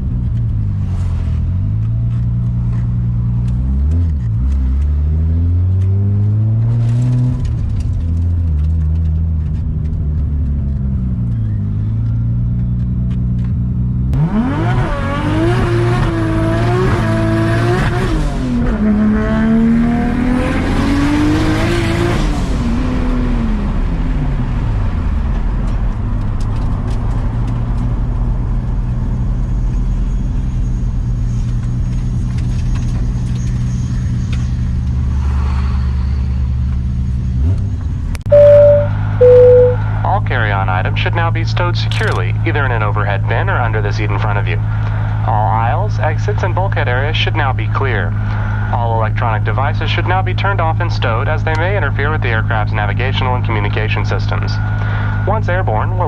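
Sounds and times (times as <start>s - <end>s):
higher engine note wavering: 38.3s - 40.0s
low engine drone: 38.3s - 56.0s.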